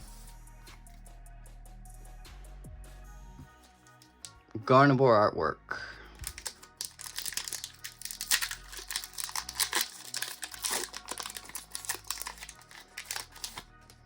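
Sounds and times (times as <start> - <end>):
foil wrapper crinkling: 6.2 - 14.0.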